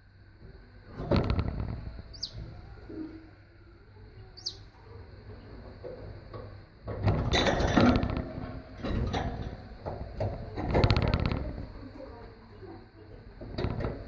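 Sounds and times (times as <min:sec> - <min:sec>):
clattering noise: 0:00.9 - 0:03.0, 0:05.3 - 0:12.0, 0:13.4 - 0:14.0
canary chirping: 0:02.1 - 0:02.7, 0:04.2 - 0:04.7.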